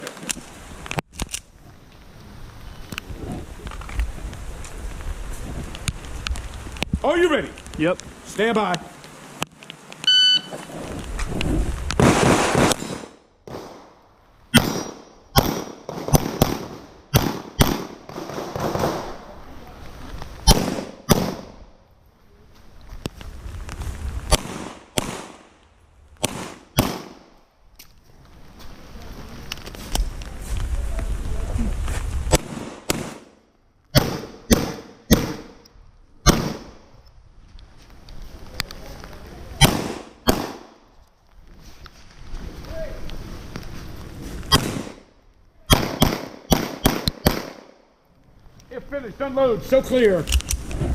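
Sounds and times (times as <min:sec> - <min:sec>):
rustling: 0:00.0 - 0:33.9, 0:35.4 - 0:50.9
pistol shots: 0:12.0 - 0:13.8, 0:14.6 - 0:19.1, 0:20.5 - 0:21.5, 0:24.3 - 0:25.5, 0:26.2 - 0:27.2, 0:34.0 - 0:35.6, 0:36.3 - 0:36.7, 0:39.6 - 0:40.7, 0:44.5 - 0:45.0, 0:45.7 - 0:47.7.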